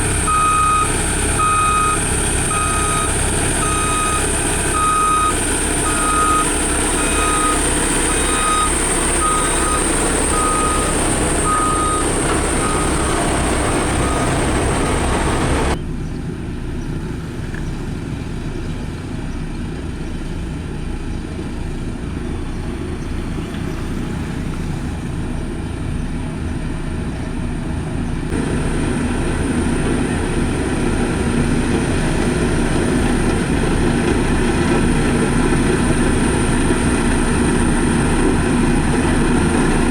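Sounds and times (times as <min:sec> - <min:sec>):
reversing alarm beeping: 0:00.0 - 0:15.8
heavy diesel engines running: 0:00.0 - 0:39.9.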